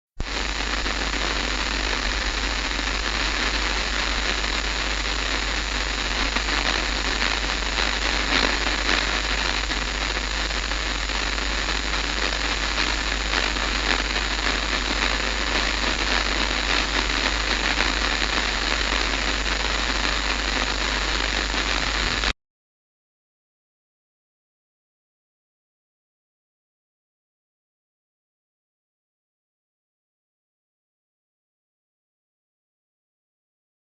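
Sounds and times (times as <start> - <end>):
television static hiss: 0.2 - 22.4.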